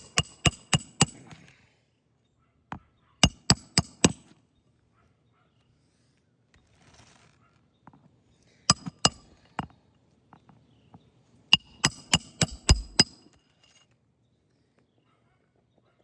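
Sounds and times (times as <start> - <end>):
hammer striking metal: 0.0 - 1.2, 3.2 - 4.2, 8.7 - 9.2, 11.6 - 13.3.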